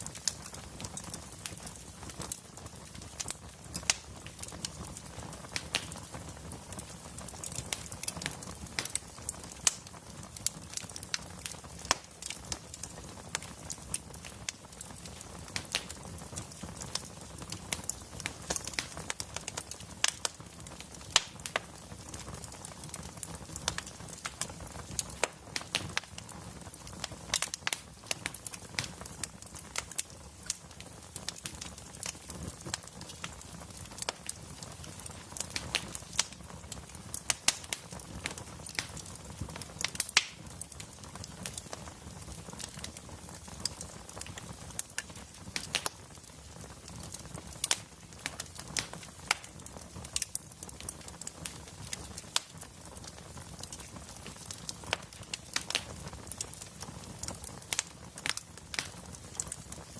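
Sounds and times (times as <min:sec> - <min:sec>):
fire crackling and popping: 0:00.0 - 0:59.9
low rumble of burning logs: 0:00.0 - 0:59.9.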